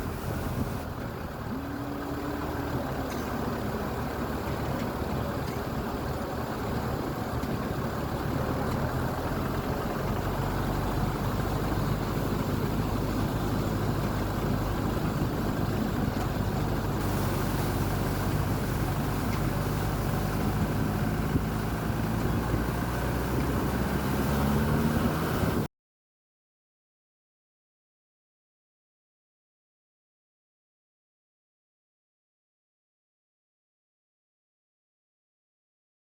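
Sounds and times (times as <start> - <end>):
engine humming: 0.0 - 25.7.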